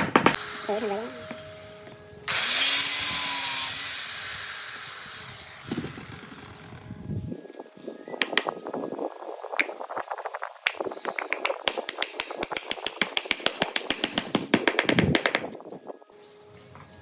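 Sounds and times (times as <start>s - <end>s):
sharp tapping on wood: 0.0s - 0.4s, 8.2s - 8.5s, 10.7s - 15.5s.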